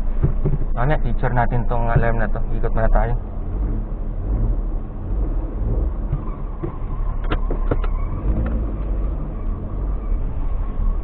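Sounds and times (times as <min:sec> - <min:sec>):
car engine and road noise: 0:00.0 - 0:11.0.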